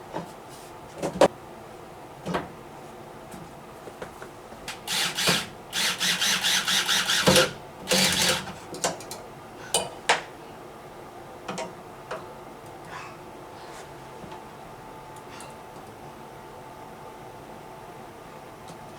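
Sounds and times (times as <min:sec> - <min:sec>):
electric screwdriver whirring: 0:04.9 - 0:08.5.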